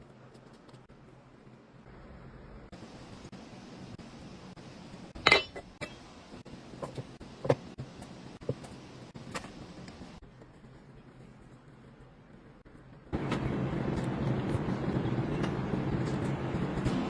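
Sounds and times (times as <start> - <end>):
kitchenware clinking: 5.2 - 6.0.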